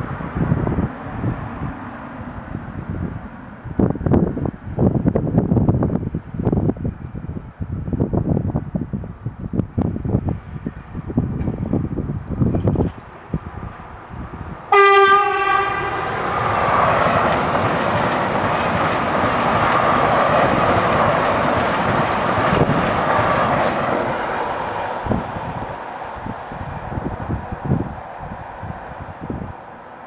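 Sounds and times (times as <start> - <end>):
train rushing along rails: 0.0 - 30.0
train horn blast: 14.7 - 16.4.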